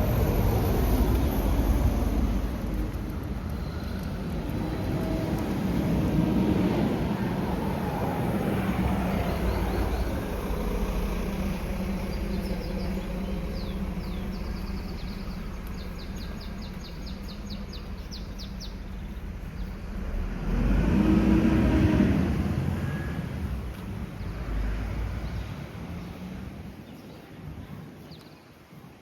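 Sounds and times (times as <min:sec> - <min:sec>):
vehicle passing close by: 0:00.0 - 0:26.8
low wind rumble: 0:00.0 - 0:29.0
small bird chirping: 0:12.0 - 0:19.8.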